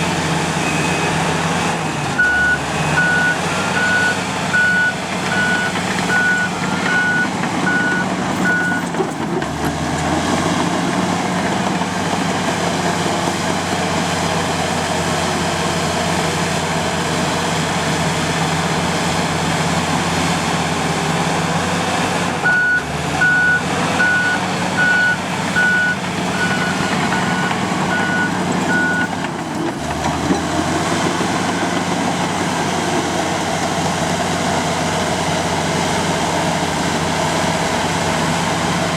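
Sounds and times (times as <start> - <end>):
bulldozer diesel engine running: 0.0 - 38.9
reversing alarm beeping: 2.2 - 8.9, 22.4 - 29.1.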